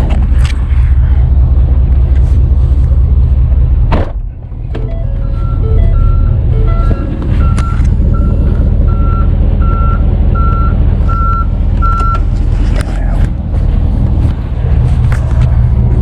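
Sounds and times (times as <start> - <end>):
diesel engine rumble: 0.0 - 16.0
reverse alarm beeping: 4.8 - 12.2.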